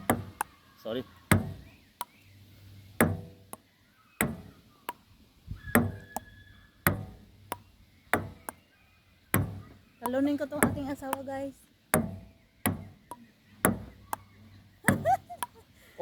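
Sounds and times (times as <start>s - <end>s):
table tennis ball knocks: 1.3s - 2.2s, 3.0s - 3.6s, 4.2s - 5.0s, 6.9s - 8.6s, 9.4s - 11.3s, 12.0s - 14.2s.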